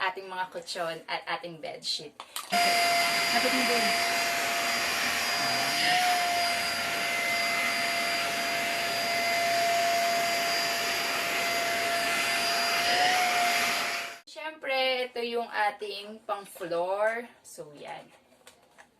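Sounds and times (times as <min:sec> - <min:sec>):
vacuum cleaner motor whine: 0:02.5 - 0:14.2.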